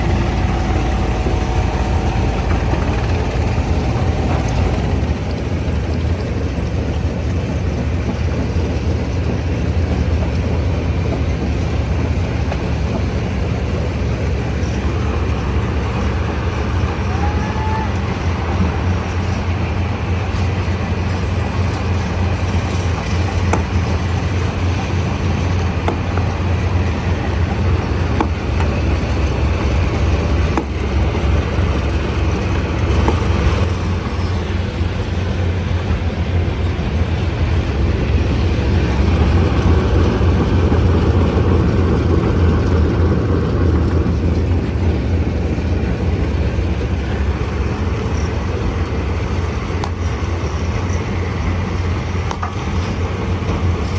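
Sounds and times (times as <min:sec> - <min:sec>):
stone crusher droning: 0:00.0 - 0:08.8, 0:09.7 - 0:42.7
sharp knocks: 0:23.0 - 0:26.9.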